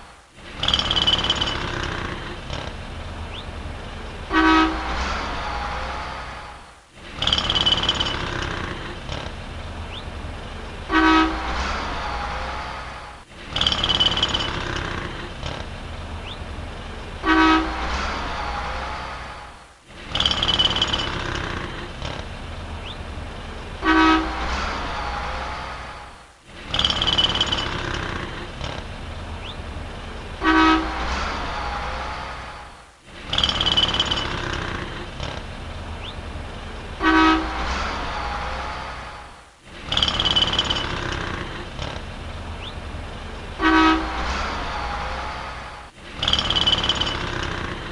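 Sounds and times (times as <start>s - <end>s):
traffic rumble: 0.0s - 47.9s
car horn honk: 4.3s - 5.0s, 10.9s - 11.6s, 17.2s - 17.9s, 23.8s - 24.6s, 30.4s - 31.2s, 37.0s - 37.8s, 43.6s - 44.5s.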